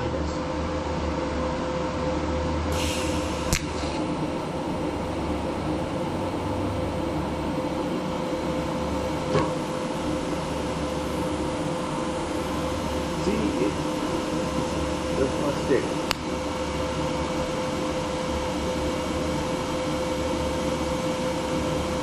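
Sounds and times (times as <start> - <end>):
welder humming: 1.0 - 22.0
short hiss: 2.7 - 4.1
sharp click: 3.5 - 4.0.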